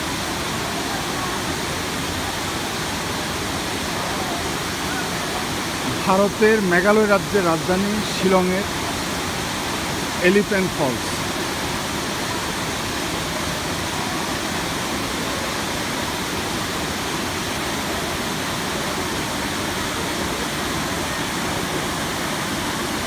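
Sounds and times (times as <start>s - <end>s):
waterfall pouring: 0.0s - 23.0s.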